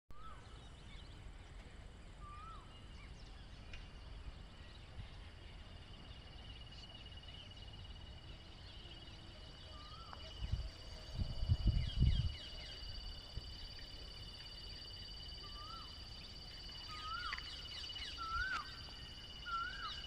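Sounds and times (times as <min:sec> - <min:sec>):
birds chirping: 0:00.2 - 0:20.0
high insect trill: 0:05.6 - 0:20.0
bird whistled calls: 0:15.4 - 0:20.0.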